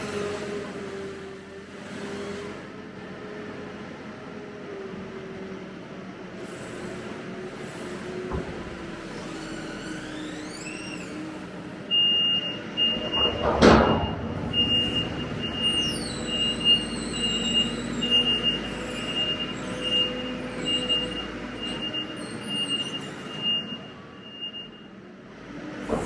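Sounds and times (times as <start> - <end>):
electronic warning beep: 11.9 - 22.2
harvest machinery running: 12.8 - 18.9
loud rushing thump: 12.9 - 15.9.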